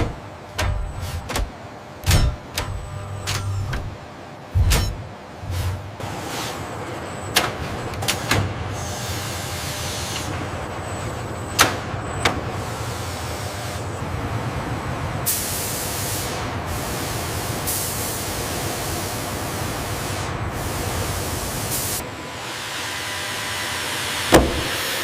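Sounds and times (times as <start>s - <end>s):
machinery hum: 0.0s - 25.0s.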